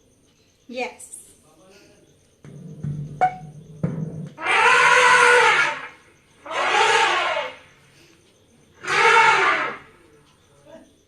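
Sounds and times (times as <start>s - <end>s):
elephant trumpeting: 4.4s - 7.7s, 8.8s - 10.0s.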